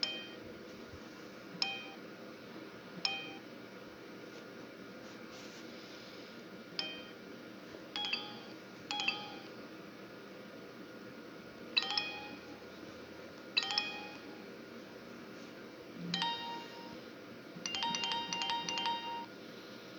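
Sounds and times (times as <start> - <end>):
phone ringtone chimes: 8.0 - 9.6, 11.8 - 12.7, 13.6 - 14.4, 16.2 - 17.0, 17.7 - 19.3.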